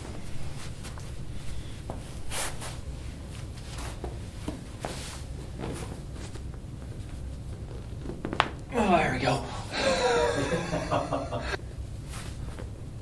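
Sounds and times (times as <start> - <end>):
steady low hum: 8.6 - 13.0.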